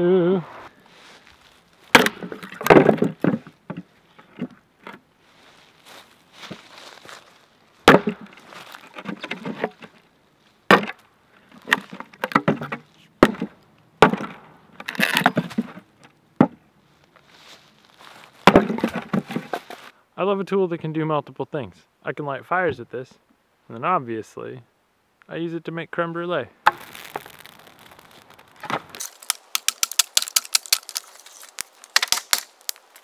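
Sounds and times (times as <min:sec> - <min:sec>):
wood splintering and crackling: 0:01.4 - 0:05.0, 0:05.6 - 0:16.5, 0:18.0 - 0:19.9, 0:26.6 - 0:33.0
hatchet striking wood: 0:02.0 - 0:03.1, 0:07.9 - 0:08.2.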